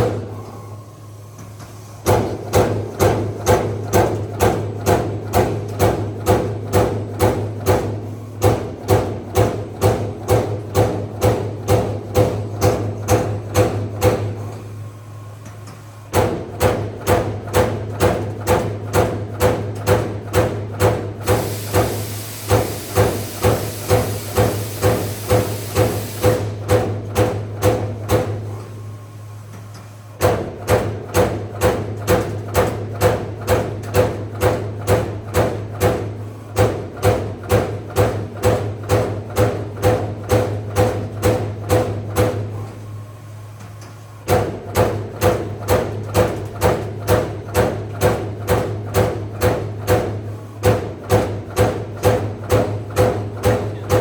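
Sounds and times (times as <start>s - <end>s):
hiss: 21.3s - 26.5s
punch press knocking sheet metal: 44.3s - 54.0s.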